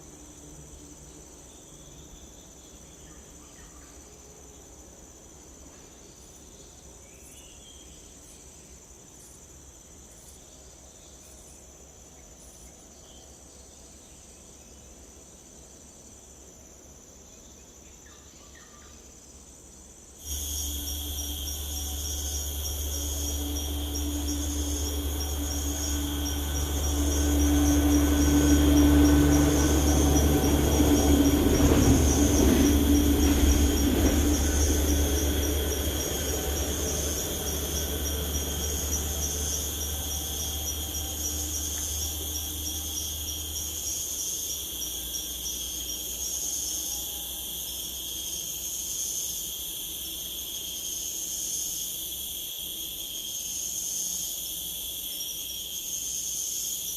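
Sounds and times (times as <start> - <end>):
insects chirring: 0.0 - 56.9
low rumble and hum: 20.3 - 44.3.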